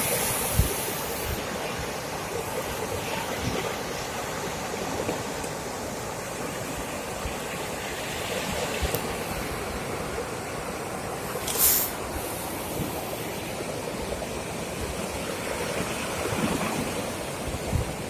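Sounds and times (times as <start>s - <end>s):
wind bumps on microphone: 0.0s - 1.9s, 17.4s - 18.0s
sea surf washing onto beach: 0.0s - 18.0s.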